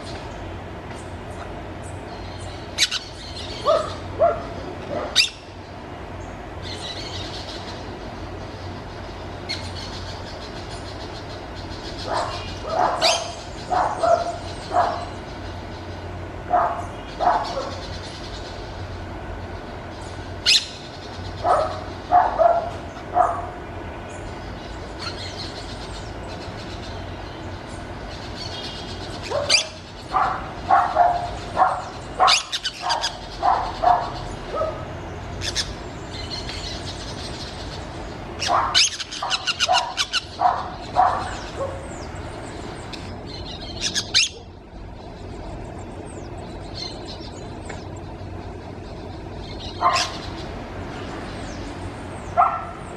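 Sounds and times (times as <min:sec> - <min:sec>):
low background hum: 0:00.0 - 0:52.9
parakeets calling: 0:00.0 - 0:52.9.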